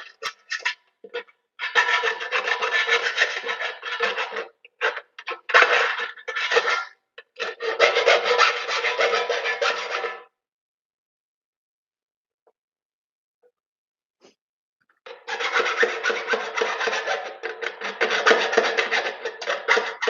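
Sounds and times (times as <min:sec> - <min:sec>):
hand file rasping on metal: 0:01.6 - 0:10.2, 0:15.1 - 0:20.0.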